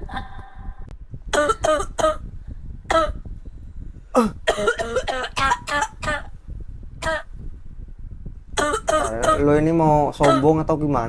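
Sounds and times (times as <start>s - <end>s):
person coughing harshly: 4.2s - 6.2s, 8.6s - 9.4s, 10.2s - 10.6s.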